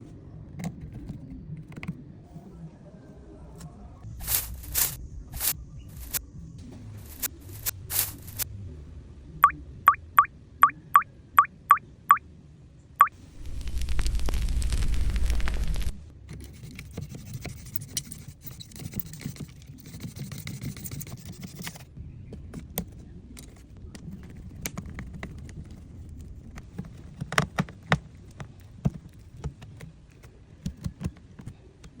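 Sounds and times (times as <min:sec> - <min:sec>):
small objects clicking and scraping: 0:04.2 - 0:06.2, 0:07.0 - 0:08.4, 0:13.3 - 0:21.9.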